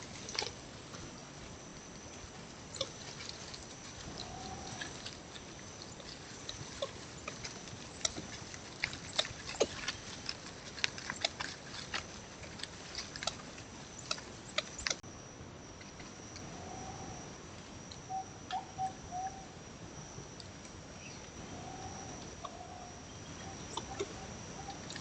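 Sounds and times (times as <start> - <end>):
steady high-pitched tone: 0.0 - 8.8, 13.5 - 25.0
animals rustling through dry leaves: 0.0 - 15.0, 20.6 - 25.0.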